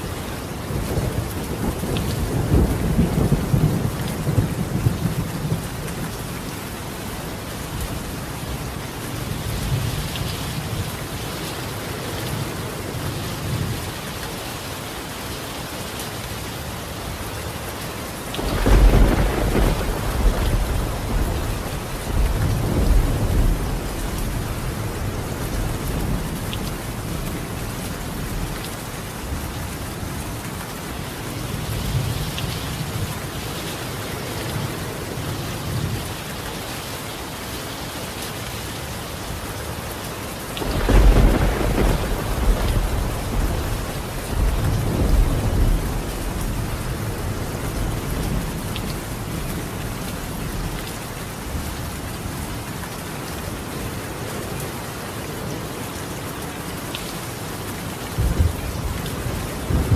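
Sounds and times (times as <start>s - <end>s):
rain on a tiled roof: 0.0s - 59.9s
rolling thunder: 0.8s - 5.8s, 18.4s - 27.4s, 40.6s - 48.6s
thunderclap: 18.4s - 24.3s, 40.6s - 46.6s.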